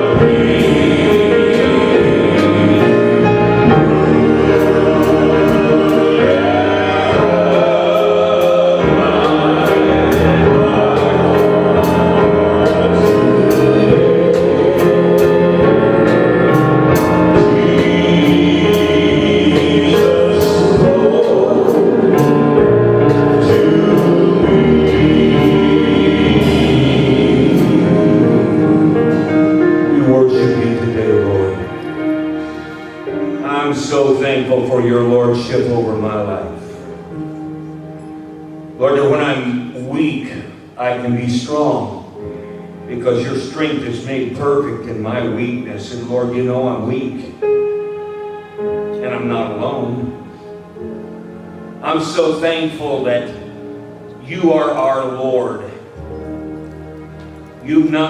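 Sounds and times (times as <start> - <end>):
steady percussive beat: 0.0 - 29.1
group singing gospel song: 0.0 - 33.1
instrumental backing: 0.0 - 58.0.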